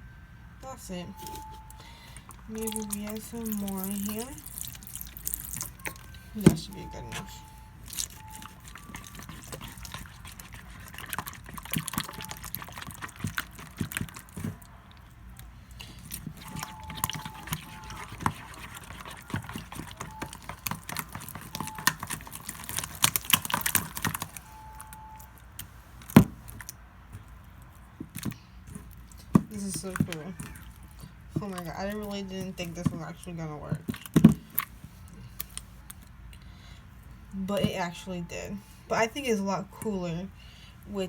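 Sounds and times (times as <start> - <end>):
hands squishing slime: 1.2 - 33.2, 33.8 - 36.1.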